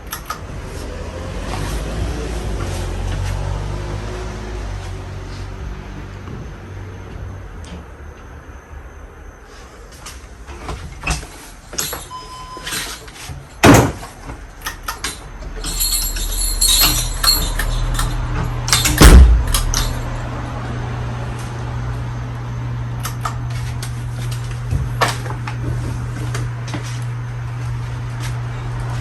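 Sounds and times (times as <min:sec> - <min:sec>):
short beep: 0:12.1 - 0:12.7
loud thumps: 0:18.4 - 0:20.1.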